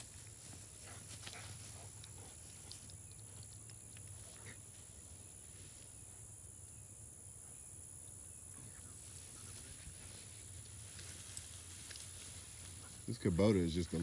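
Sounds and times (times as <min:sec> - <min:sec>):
faint ticks: 0:00.8 - 0:04.6, 0:10.6 - 0:12.2.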